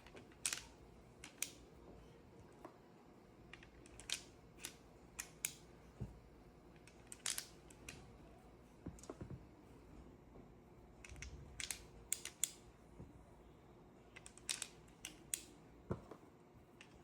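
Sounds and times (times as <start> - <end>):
pistol mechanism clicks: 11.6 - 12.6.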